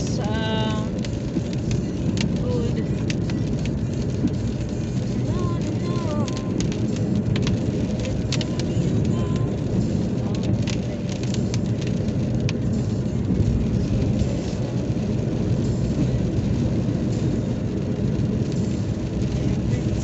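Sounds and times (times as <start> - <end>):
car road and engine noise: 0.0 - 20.0
rain ticking on car: 0.0 - 20.0.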